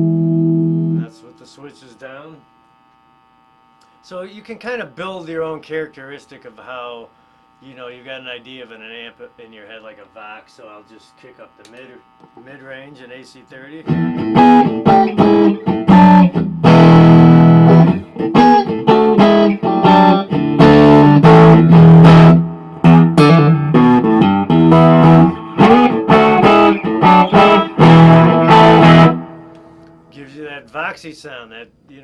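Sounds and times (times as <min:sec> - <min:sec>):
clean electric guitar: 0:00.0 - 0:01.4, 0:13.8 - 0:30.1.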